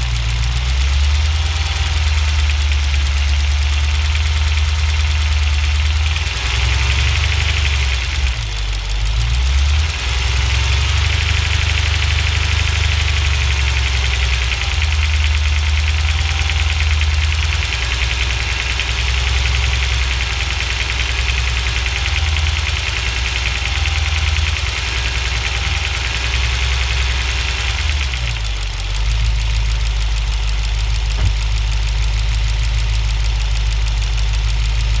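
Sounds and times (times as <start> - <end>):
car engine running: 0.0 - 35.0
engine knocking: 0.0 - 35.0.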